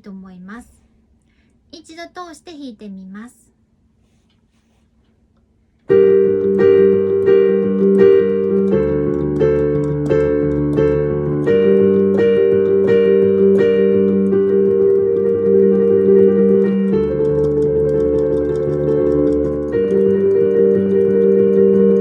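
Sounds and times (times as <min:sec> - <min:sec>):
piano chords over bass note: 0:05.9 - 0:22.0.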